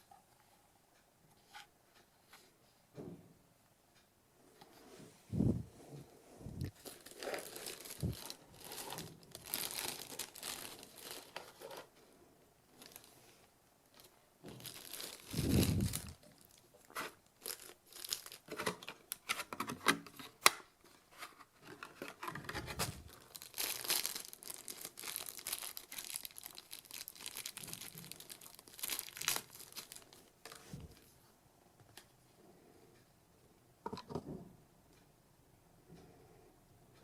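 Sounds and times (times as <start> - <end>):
packaging crinkling and tearing: 6.6 - 11.9, 12.8 - 13.2, 14.0 - 20.6, 21.7 - 30.2.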